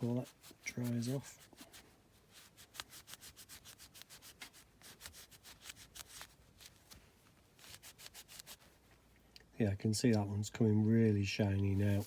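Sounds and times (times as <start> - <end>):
cloth rubbing on metal part: 0.0 - 9.0, 11.6 - 12.0.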